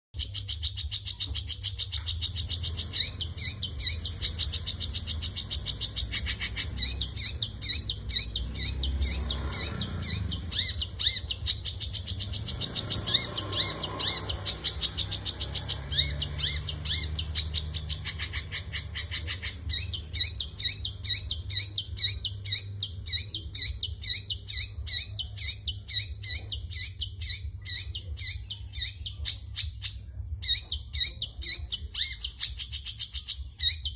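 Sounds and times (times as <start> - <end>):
steady low rumble: 1.2 - 33.9.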